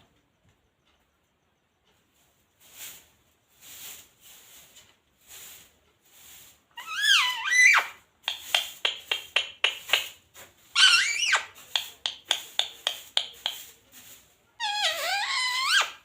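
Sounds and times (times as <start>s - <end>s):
parrot chirping: 6.8s - 10.0s, 10.8s - 13.6s, 14.6s - 16.0s
parrot warbling call: 10.8s - 11.4s.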